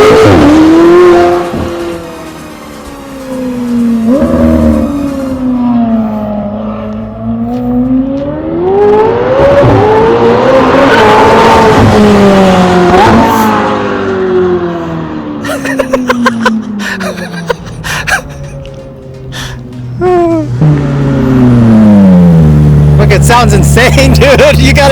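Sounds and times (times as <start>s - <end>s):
car engine accelerating: 0.0s - 24.9s
exhaust crackles and pops: 17.6s - 24.9s.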